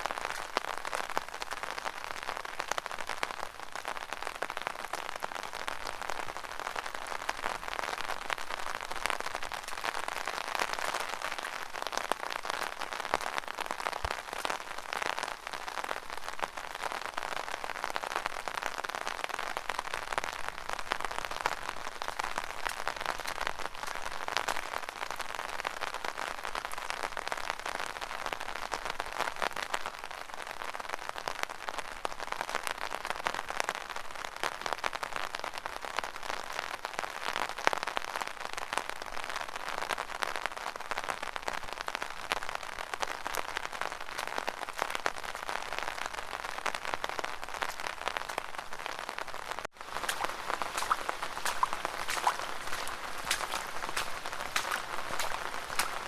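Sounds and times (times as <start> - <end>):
rainwater dripping in gutter: 0.0 - 28.6, 43.0 - 56.0.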